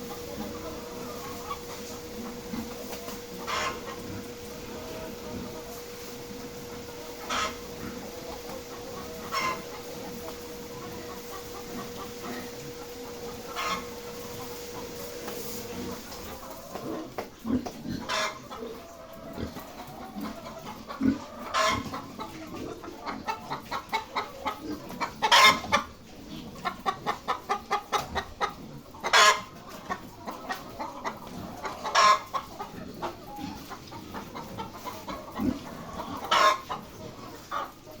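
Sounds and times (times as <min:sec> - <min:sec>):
hens clucking: 0:00.0 - 0:38.0
hen squawking: 0:03.4 - 0:04.0, 0:07.0 - 0:12.6.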